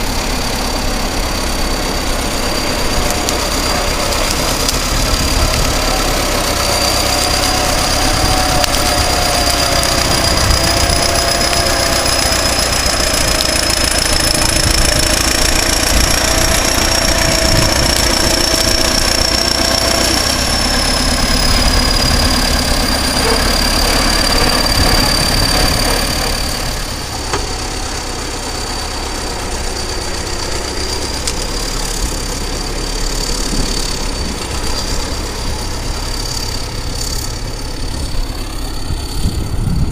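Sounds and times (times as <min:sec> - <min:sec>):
bulldozer diesel engine rumble: 0:00.0 - 0:39.9.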